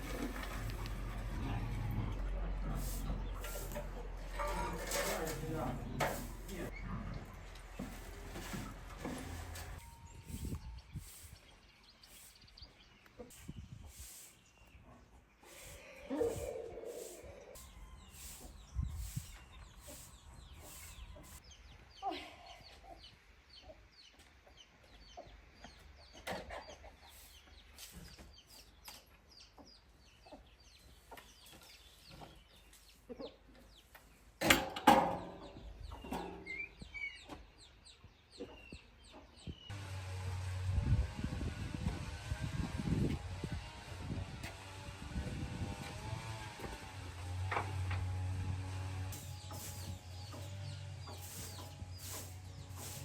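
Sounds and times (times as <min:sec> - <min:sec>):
chickens clucking: 0:14.7 - 0:21.5, 0:22.5 - 0:34.2, 0:35.2 - 0:39.5.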